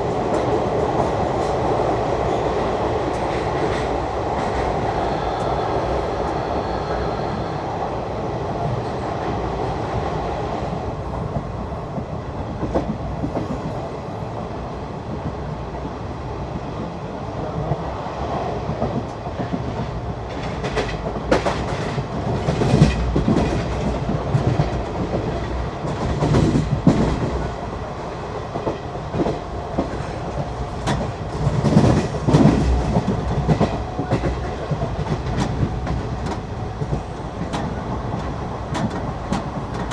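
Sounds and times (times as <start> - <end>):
clickety-clack over rail joints: 0.0 - 7.3, 8.6 - 39.9
train wheels rumbling on rails: 0.0 - 39.9.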